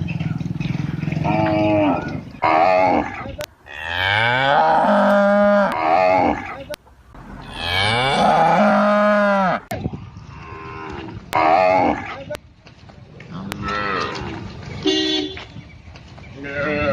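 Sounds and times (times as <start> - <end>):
calf mooing: 1.2 - 6.6, 7.4 - 9.7, 16.4 - 16.9.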